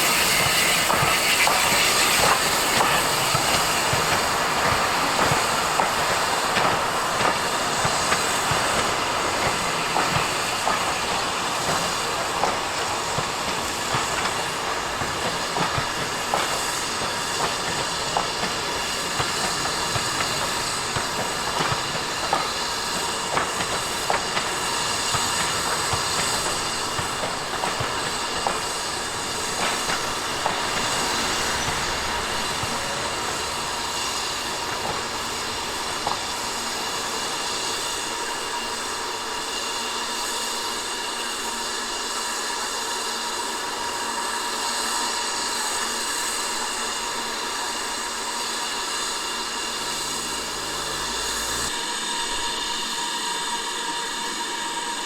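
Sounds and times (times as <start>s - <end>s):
ringing wheel on rail tones: 0.0s - 39.2s
steam train rolling on rails: 0.0s - 55.0s.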